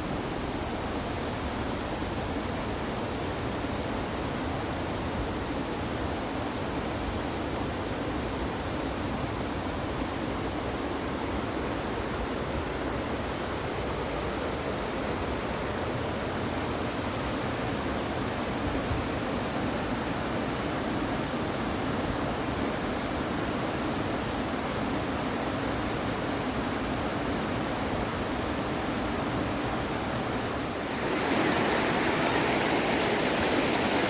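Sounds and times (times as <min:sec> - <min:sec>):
stream rushing over rocks: 0:28.2 - 0:34.0.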